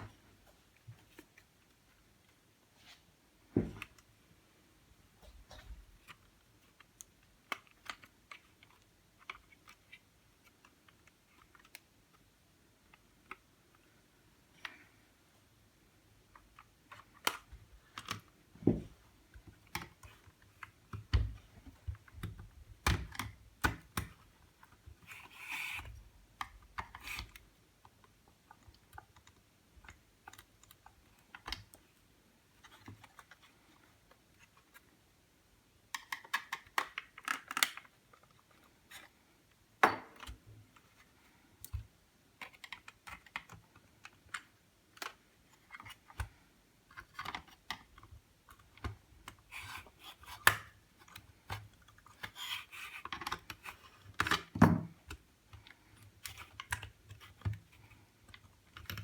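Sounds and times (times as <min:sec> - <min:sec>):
small tools clicking on plastic: 0:35.9 - 0:39.1, 0:41.6 - 0:59.0.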